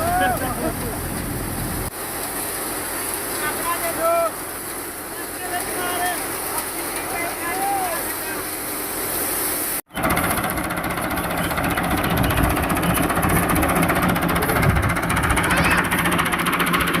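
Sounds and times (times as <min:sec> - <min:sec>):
tractor engine drone: 0:00.0 - 0:03.3, 0:09.9 - 0:17.0
thresher mechanical clatter: 0:10.0 - 0:17.0.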